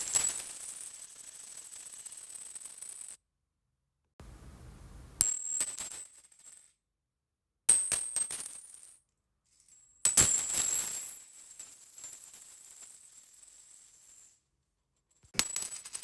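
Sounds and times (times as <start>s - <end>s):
coins dropping on hard surface: 7.7s - 8.9s, 15.4s - 16.0s.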